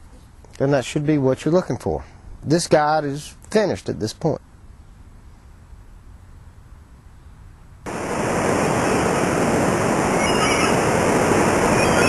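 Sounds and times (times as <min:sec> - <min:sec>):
loud steady rushing noise: 0:07.8 - 0:12.0.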